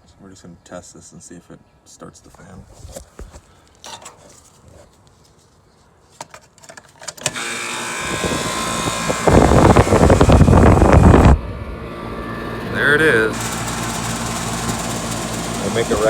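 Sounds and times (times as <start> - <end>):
air conditioner unit humming: 7.3 - 16.0
fan airflow rushing: 7.4 - 16.0.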